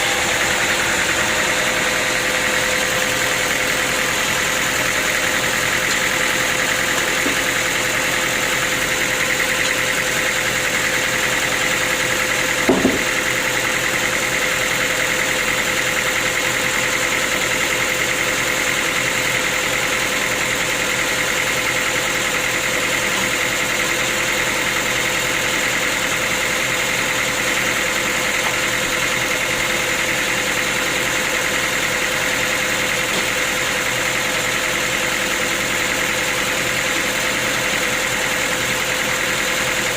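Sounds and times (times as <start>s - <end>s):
sawmill machinery humming: 0.0s - 39.9s
short knock: 12.7s - 13.1s.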